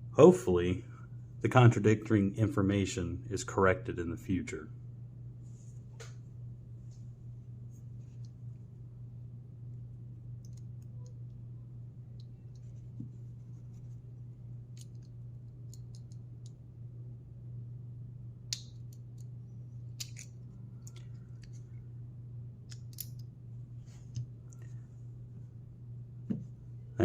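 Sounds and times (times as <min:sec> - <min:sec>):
steady low hum: 0:00.0 - 0:27.0
lock pick scraping and clicking: 0:20.0 - 0:21.6, 0:22.7 - 0:23.2.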